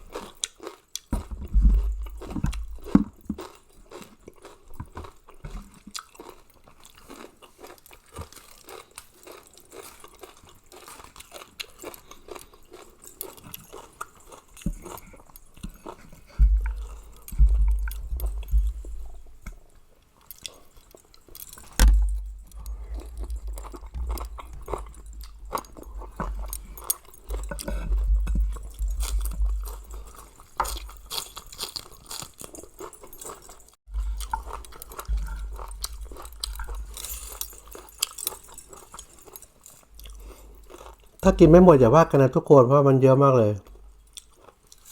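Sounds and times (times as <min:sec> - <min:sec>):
chewing and crunching: 0:00.0 - 0:42.3, 0:43.6 - 0:44.9
deep low rumbles: 0:16.4 - 0:19.3, 0:21.8 - 0:26.6, 0:27.4 - 0:30.1.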